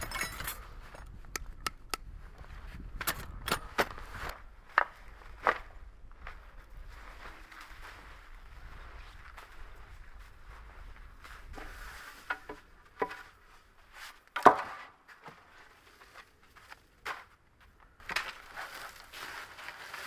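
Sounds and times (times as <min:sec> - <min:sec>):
crunching handling noises: 0:17.7 - 0:20.0.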